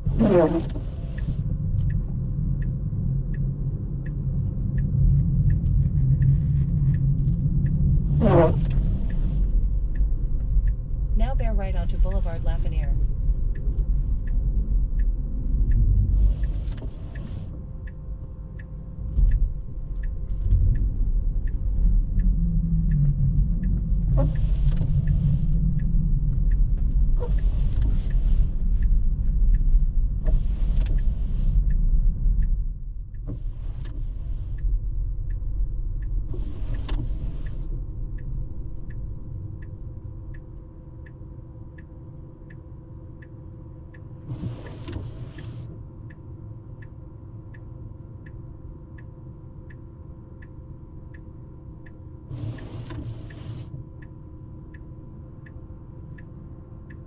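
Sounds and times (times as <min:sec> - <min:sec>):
windscreen wipers swishing: 0:00.0 - 0:40.4, 0:44.2 - 0:46.1, 0:52.3 - 0:53.9
road and tyre rumble: 0:00.0 - 0:41.2, 0:43.9 - 0:46.2
turn signal ticking: 0:00.0 - 0:57.0.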